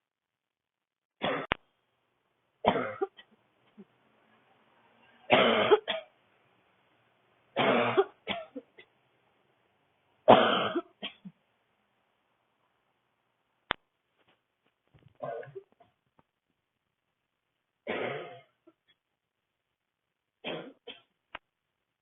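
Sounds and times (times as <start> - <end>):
woman coughing: 2.7 - 3.2, 5.3 - 6.1, 7.6 - 8.9, 10.3 - 11.3.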